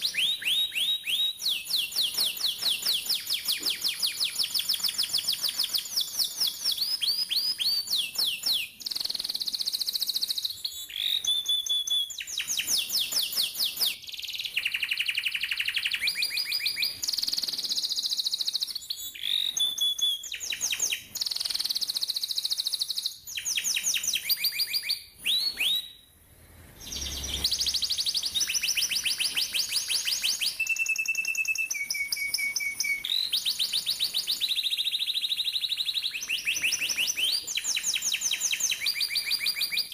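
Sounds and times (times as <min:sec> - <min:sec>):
canary singing trills: 0:00.0 - 0:26.0, 0:26.8 - 0:39.9.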